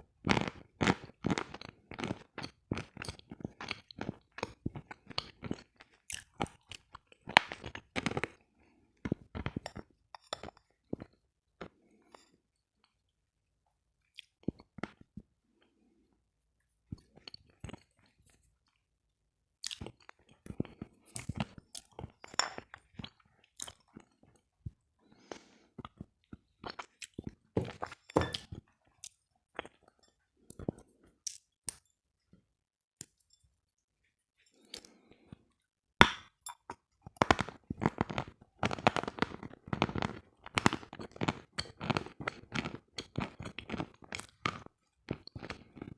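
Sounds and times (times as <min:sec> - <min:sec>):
crunching and chewing crisp food: 0:00.1 - 0:13.0, 0:19.6 - 0:31.8, 0:36.6 - 0:45.9
crunchy chewing: 0:00.3 - 0:08.3.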